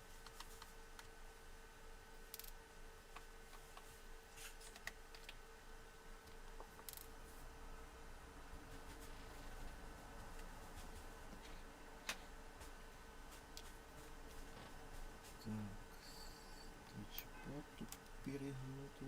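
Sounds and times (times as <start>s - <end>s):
small screws clicking and scraping: 2.3s - 2.6s, 6.8s - 7.1s.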